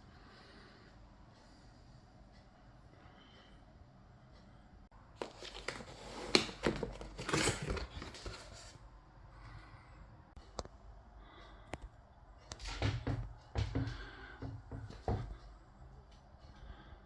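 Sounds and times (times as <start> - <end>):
rustling crinkling handling noise: 5.1 - 8.8.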